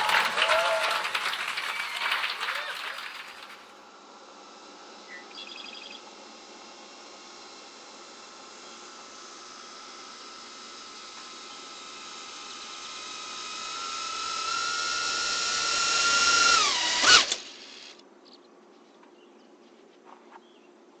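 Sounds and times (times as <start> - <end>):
insects: 0.6 - 21.0
faint birds: 4.0 - 13.0, 18.0 - 21.0
drone motors whining: 5.4 - 18.0.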